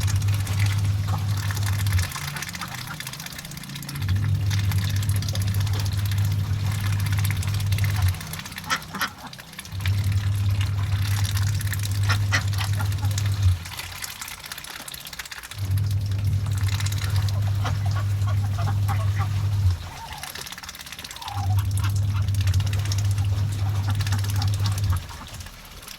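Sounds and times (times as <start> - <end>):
ducks quacking: 0.0 - 3.4, 4.1 - 13.5, 16.3 - 25.5
steady low hum: 0.0 - 14.3, 15.1 - 25.8.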